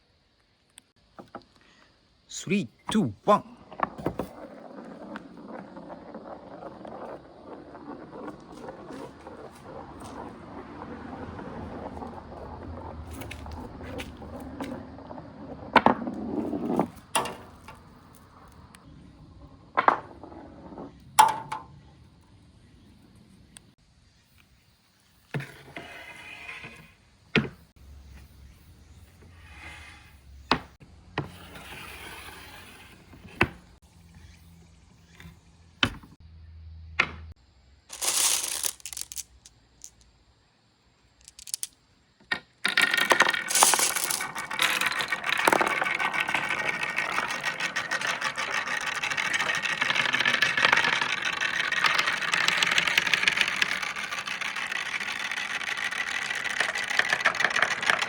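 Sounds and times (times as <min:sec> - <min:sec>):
glass marbles rolling and clicking: 0:03.7 - 0:18.2, 0:37.9 - 0:40.1, 0:41.2 - 0:58.0.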